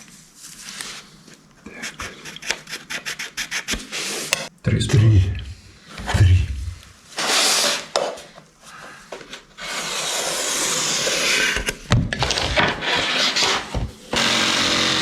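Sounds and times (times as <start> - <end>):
floor planks scraping and knocking: 9.1 - 14.2
power tool running: 14.1 - 15.0.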